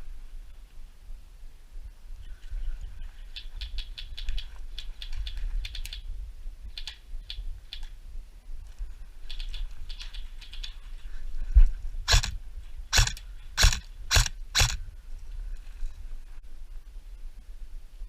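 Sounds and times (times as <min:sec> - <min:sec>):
airsoft guns firing: 0:12.1 - 0:12.3, 0:12.9 - 0:14.8.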